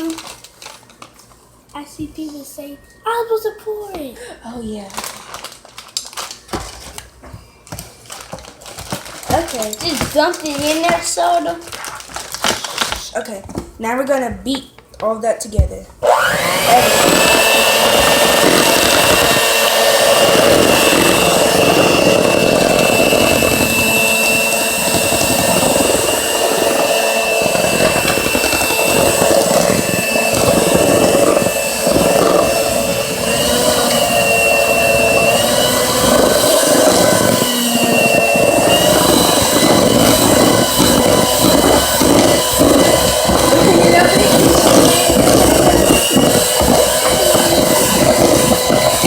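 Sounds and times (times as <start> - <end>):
electric mixer motor whine: 16.0 - 49.0.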